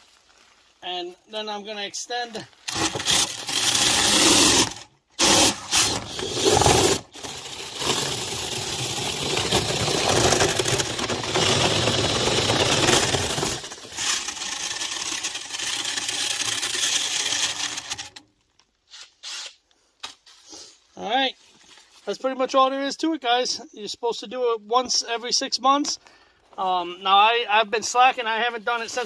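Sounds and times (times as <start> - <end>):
power drill spinning a brush: 2.6 - 18.2.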